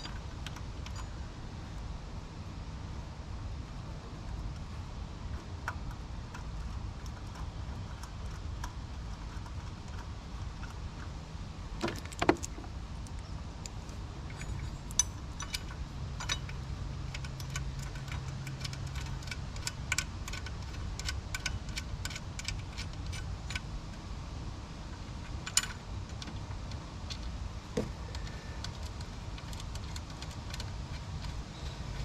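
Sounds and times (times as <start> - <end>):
regular ticks: 5.3 - 11.2, 14.9 - 24.1, 28.1 - 32.0
metallic clicks of bolts: 13.6 - 23.7, 25.2 - 27.3.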